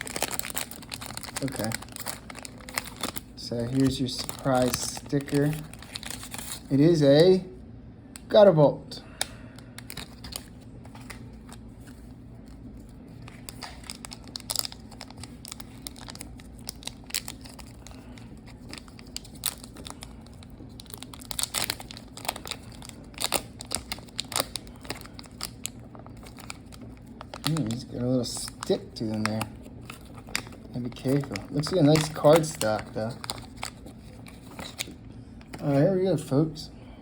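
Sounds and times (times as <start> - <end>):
wrapper tearing and crinkling: 0.0 - 6.7, 9.8 - 12.1, 13.2 - 35.8
low steady hum: 0.0 - 37.0.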